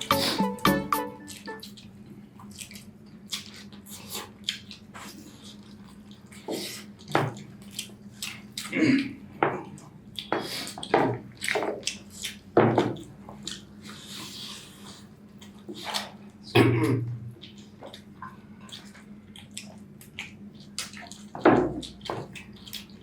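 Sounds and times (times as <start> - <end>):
steady low hum: 0.0 - 2.6
wet chewing and smacking: 2.4 - 8.8, 9.6 - 16.5, 17.3 - 23.0.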